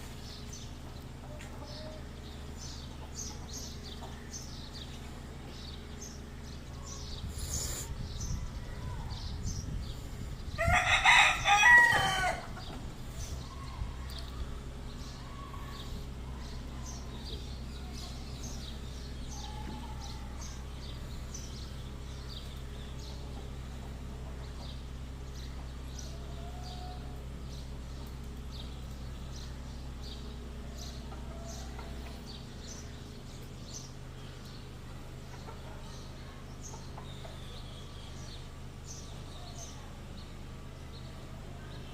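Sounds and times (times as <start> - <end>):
hens and birds chirping: 0.0 - 41.9
lower bird calls: 0.0 - 41.9
steady low hum: 0.0 - 41.9.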